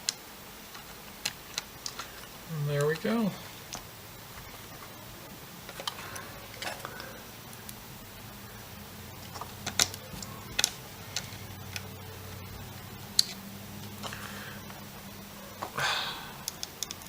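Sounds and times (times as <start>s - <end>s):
low steady hum: 0.0s - 17.0s
clicks and taps of small screws: 16.4s - 17.0s.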